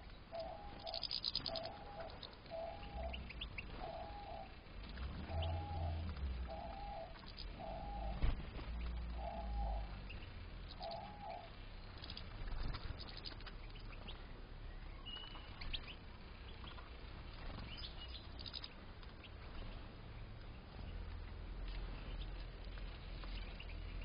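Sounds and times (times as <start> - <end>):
low hooting notes: 0.0 - 11.9
finches chirping: 0.0 - 19.8.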